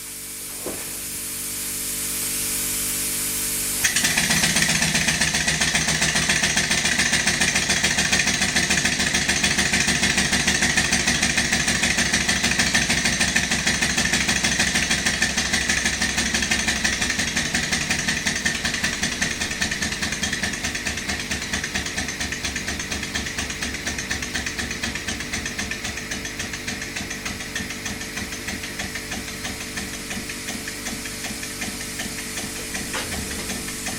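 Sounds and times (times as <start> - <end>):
engine running with exhaust beats: 0.0 - 33.9
hiss: 0.4 - 4.7, 29.2 - 33.9.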